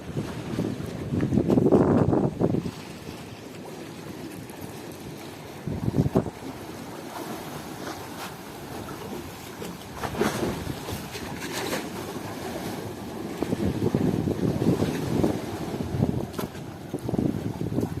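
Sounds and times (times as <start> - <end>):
wind buffeting microphone: 0.0 - 3.2, 5.5 - 6.6, 9.1 - 18.0
sea waves: 0.0 - 18.0.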